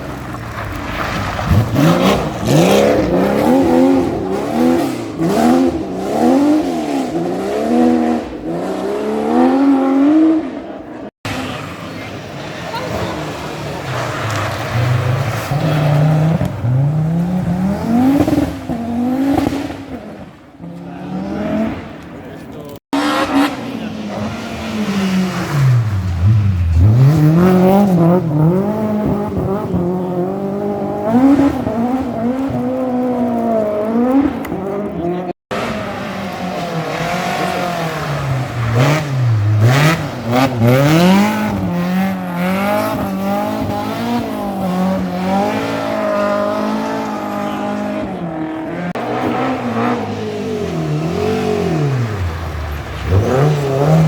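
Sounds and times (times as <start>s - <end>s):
rally car engines revving: 0.0s - 54.0s.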